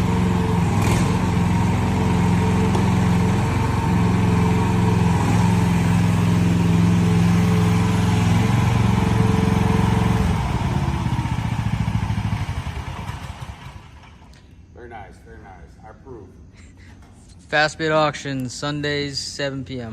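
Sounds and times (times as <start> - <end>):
excavator engine running: 0.0 - 14.4.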